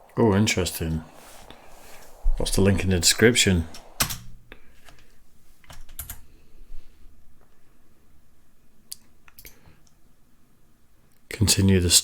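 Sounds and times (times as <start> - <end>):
computer keyboard typing: 4.0 - 4.3, 5.7 - 6.2.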